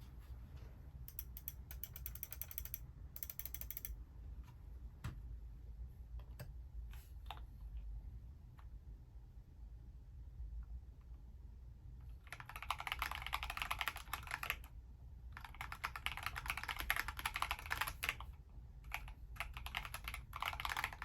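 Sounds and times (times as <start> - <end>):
keyboard key clicks: 1.1 - 3.9
rapid ratchet-like ticking: 1.1 - 3.9.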